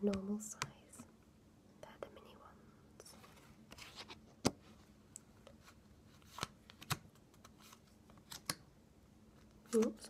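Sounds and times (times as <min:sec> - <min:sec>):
playing cards rustling: 0:03.2 - 0:08.6
playing cards tapping and clicking: 0:06.3 - 0:07.5, 0:08.1 - 0:08.7.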